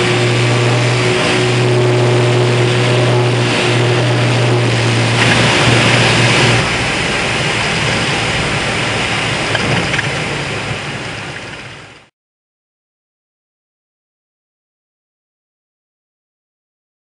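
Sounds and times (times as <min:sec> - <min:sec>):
aircraft engine drone in cabin: 0:00.0 - 0:12.1.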